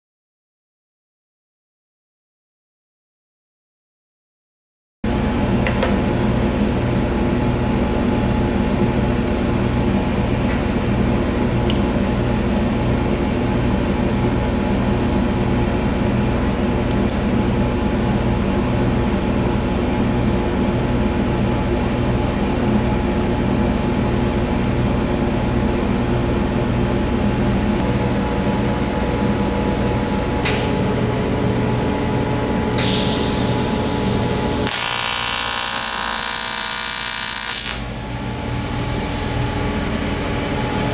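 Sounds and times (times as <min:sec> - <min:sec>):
welding arc buzzing: 0:30.4 - 0:38.2.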